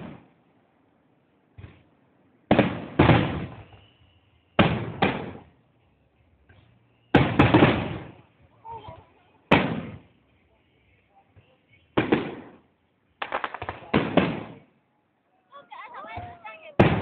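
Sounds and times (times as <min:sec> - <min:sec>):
fireworks booming with echo: 0:00.0 - 0:00.4, 0:01.5 - 0:05.6, 0:06.4 - 0:08.5, 0:09.4 - 0:10.2, 0:11.6 - 0:14.8, 0:15.9 - 0:17.0.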